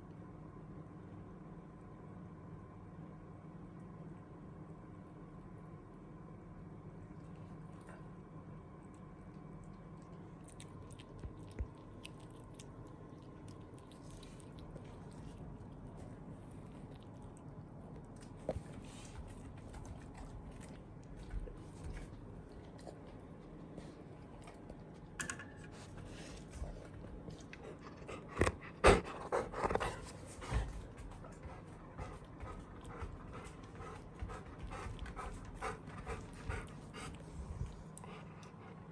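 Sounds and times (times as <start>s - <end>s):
pet chewing food: 6.9s - 38.9s
dog panting: 26.1s - 38.9s.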